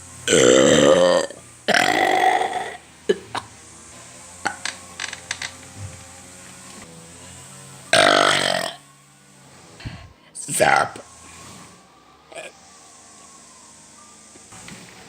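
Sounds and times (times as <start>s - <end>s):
person burping: 0.3s - 3.5s, 8.0s - 8.8s.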